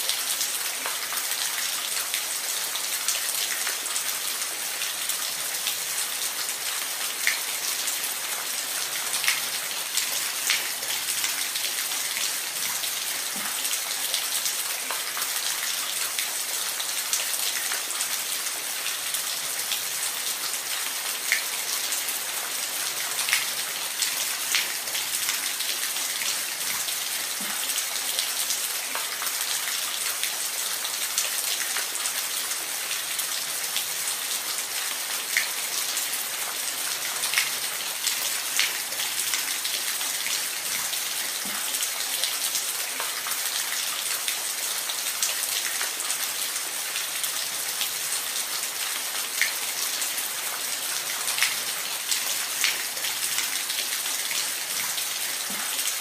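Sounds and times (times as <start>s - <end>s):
steady rain hiss: 0.0s - 56.0s.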